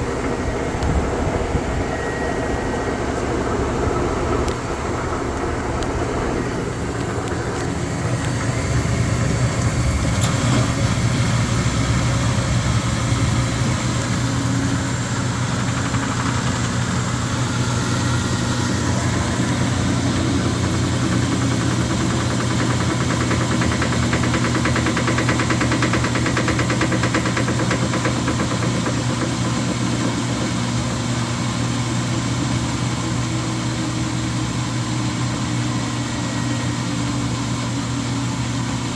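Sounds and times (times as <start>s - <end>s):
washing machine humming: 0.0s - 38.9s
fast knocking rattle: 11.4s - 31.0s.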